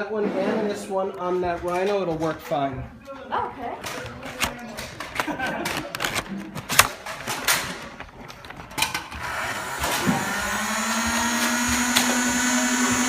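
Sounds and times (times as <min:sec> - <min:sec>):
clicks: 0:03.8 - 0:10.1
electric motors whining: 0:08.9 - 0:13.0.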